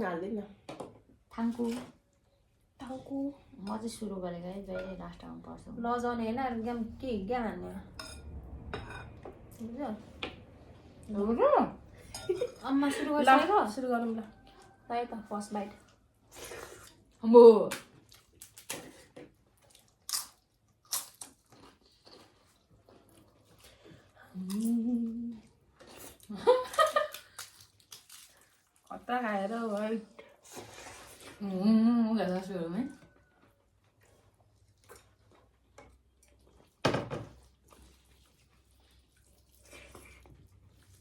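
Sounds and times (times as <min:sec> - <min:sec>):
chewing and mouth smacks: 0:17.8 - 0:24.6, 0:27.0 - 0:28.9
person humming mmm: 0:24.3 - 0:25.5.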